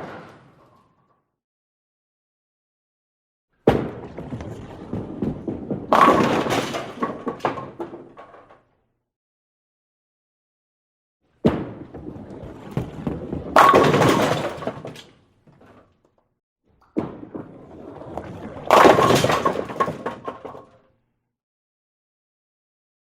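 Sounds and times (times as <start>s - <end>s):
bowling pins crashing: 3.6s - 8.6s, 11.4s - 15.2s, 17.0s - 20.7s
bowling ball rolling: 3.7s - 8.5s, 11.4s - 15.8s, 16.9s - 20.6s.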